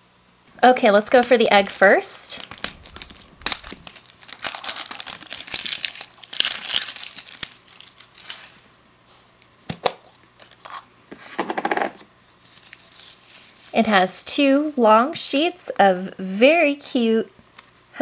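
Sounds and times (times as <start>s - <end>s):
plastic wrapper crinkling and tearing: 0.8s - 8.6s, 12.4s - 13.7s.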